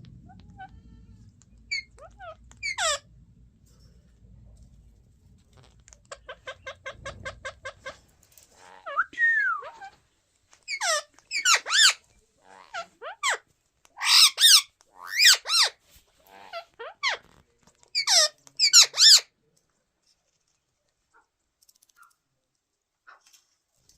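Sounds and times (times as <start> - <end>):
parrots calling: 1.6 - 3.1, 8.6 - 10.0, 10.7 - 13.4, 14.0 - 17.2, 17.9 - 19.3.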